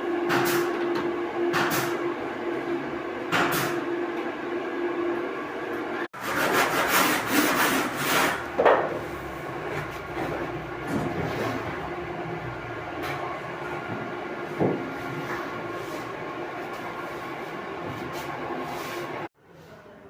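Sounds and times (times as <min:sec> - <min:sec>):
machine hum: 0:08.0 - 0:19.3.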